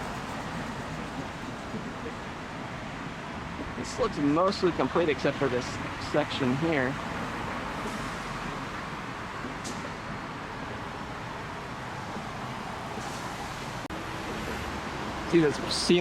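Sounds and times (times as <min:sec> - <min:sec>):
road traffic noise: 0:00.0 - 0:16.0.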